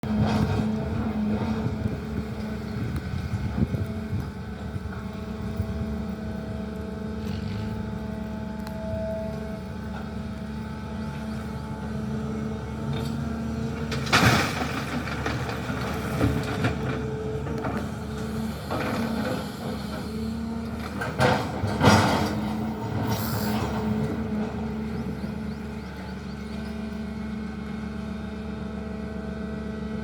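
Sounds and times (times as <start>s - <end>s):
excavator diesel engine running: 0.0s - 30.0s.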